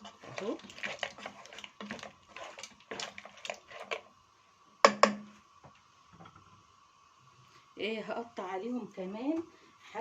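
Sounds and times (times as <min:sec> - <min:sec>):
spoon stirring in cooking pot: 0:00.0 - 0:04.2
spoon knocking on pot: 0:04.8 - 0:05.4.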